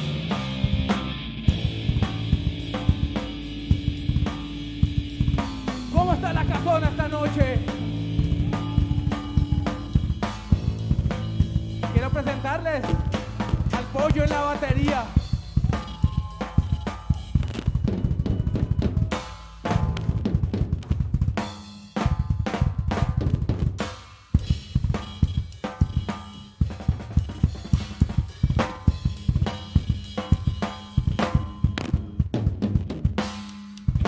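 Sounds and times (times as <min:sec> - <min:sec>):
rock band playing: 0:00.0 - 0:20.8, 0:27.2 - 0:32.3
busy drum kit: 0:00.0 - 0:34.0.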